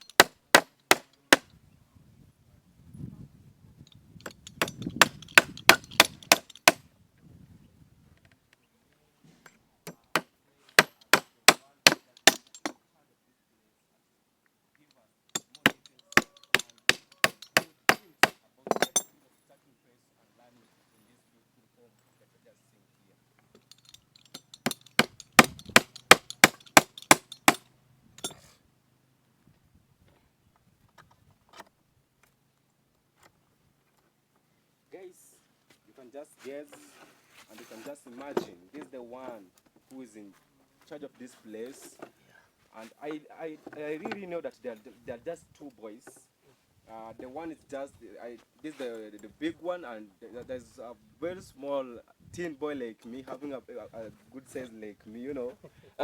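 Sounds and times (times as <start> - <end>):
hammer strikes: 0.0 - 1.4, 4.2 - 6.8, 9.9 - 12.8, 15.4 - 19.1, 24.3 - 27.6
hammer blows on wood: 4.3 - 6.8.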